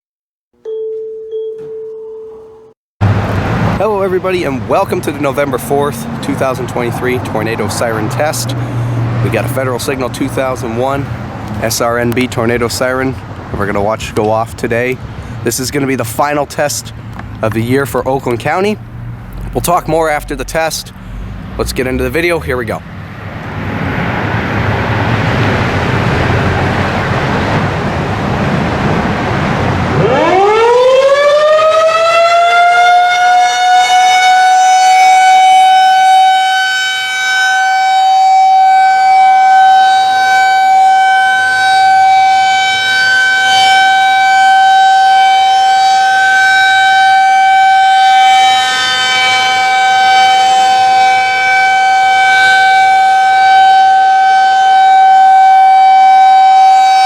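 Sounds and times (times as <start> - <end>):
tornado siren wailing: 3.3 - 11.5, 18.5 - 57.0
rushing noise: 18.6 - 30.6.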